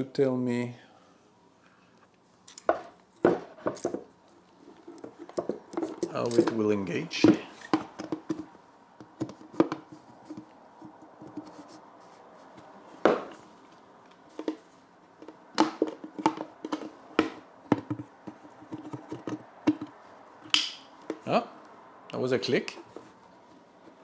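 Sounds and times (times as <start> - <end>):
plastic knocks and scrapes: 4.8 - 6.6, 7.2 - 11.8, 14.3 - 20.0.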